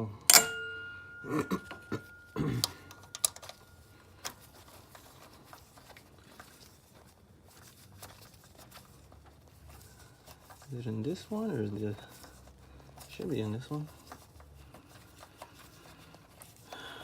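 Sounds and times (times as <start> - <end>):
hand tools clicking and tapping: 0.0 - 4.9.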